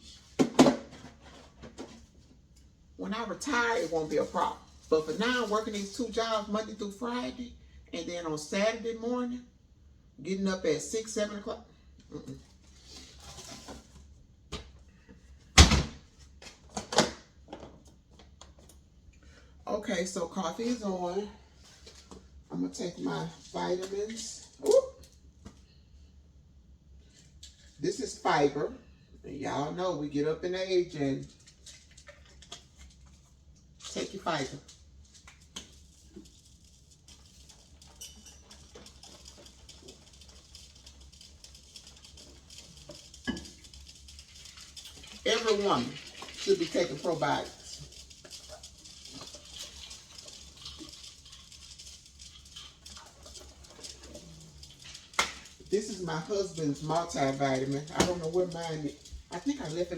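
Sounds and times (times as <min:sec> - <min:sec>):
kitchen things knocking and clunking: 0:00.4 - 0:02.0
small objects rustling: 0:31.3 - 0:59.9.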